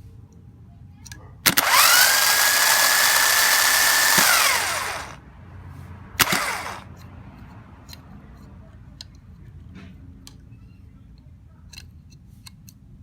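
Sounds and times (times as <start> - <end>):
electric motor whining: 1.5 - 5.2, 6.2 - 6.8.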